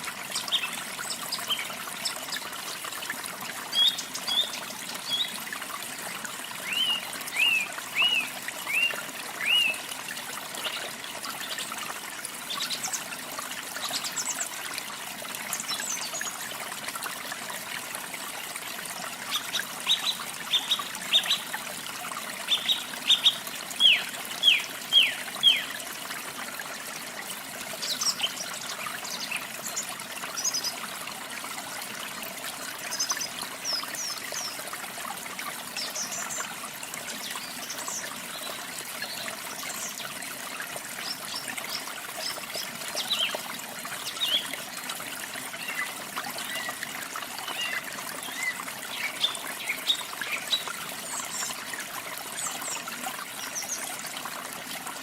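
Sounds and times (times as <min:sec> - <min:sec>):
songbirds singing: 0:03.7 - 0:05.4, 0:06.6 - 0:09.9, 0:19.2 - 0:21.6, 0:22.4 - 0:25.8, 0:27.7 - 0:30.8, 0:41.0 - 0:44.6, 0:45.5 - 0:53.8.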